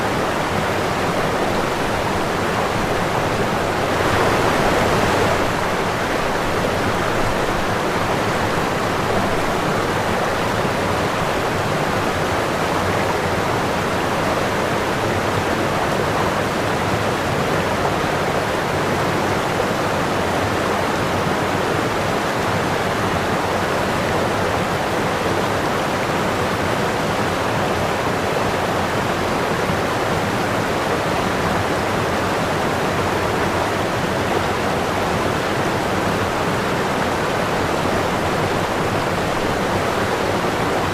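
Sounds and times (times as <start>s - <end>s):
running water rushing: 0.0s - 40.9s.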